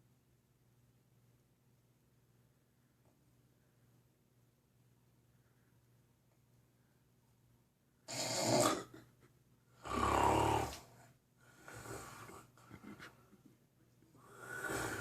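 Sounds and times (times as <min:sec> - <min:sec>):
heavy snoring: 0:08.1 - 0:09.0, 0:09.8 - 0:11.0, 0:11.6 - 0:12.5, 0:14.2 - 0:15.0.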